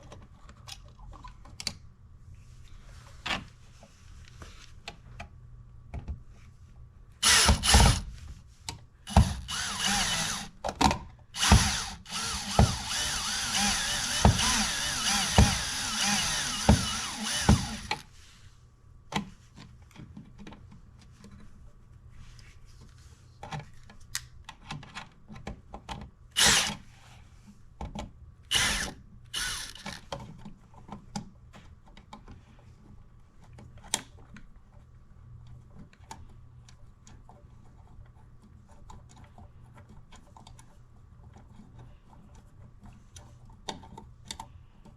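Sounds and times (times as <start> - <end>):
clicks and knocks of handling: 0.0 - 1.9, 19.1 - 21.7, 22.4 - 26.2, 27.8 - 28.2, 29.9 - 44.9
power drill running: 7.2 - 8.0, 9.1 - 10.6, 11.4 - 18.0, 26.4 - 26.8, 28.5 - 30.0.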